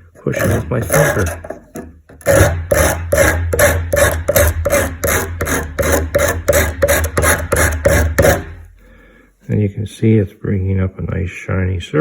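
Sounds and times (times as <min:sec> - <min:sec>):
tool scraping on diamond hone: 0:00.2 - 0:08.6.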